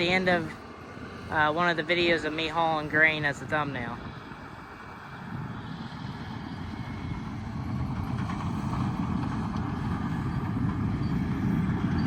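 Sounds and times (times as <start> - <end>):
bulldozer diesel engine rumbling: 0.0 - 12.0.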